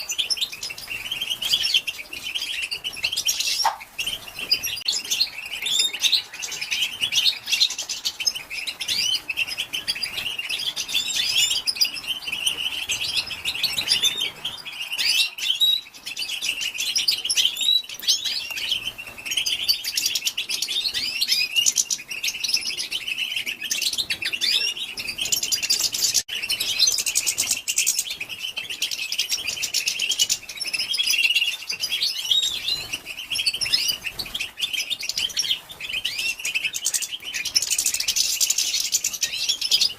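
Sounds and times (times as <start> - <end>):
goldfinch twittering: 0.0 - 39.9.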